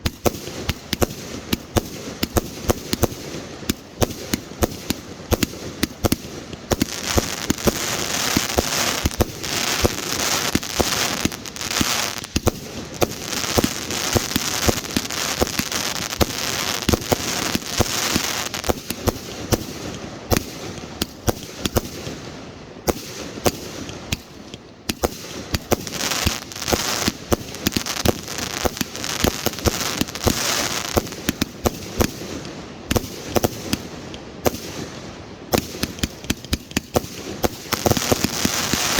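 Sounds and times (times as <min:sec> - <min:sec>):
fireworks bangs and pops: 0:00.0 - 0:38.9
fireworks crackling: 0:00.0 - 0:38.9.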